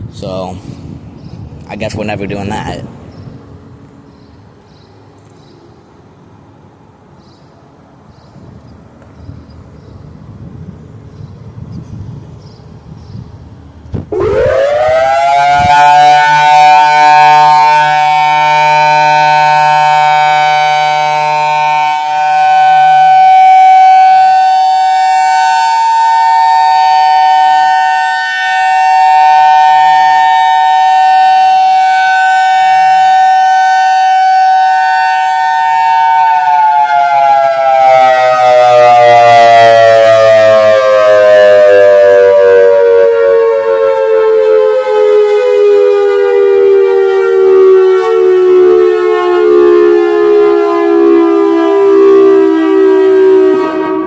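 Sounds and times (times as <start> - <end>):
electronic warning siren dual-tone: 14.0 - 54.0.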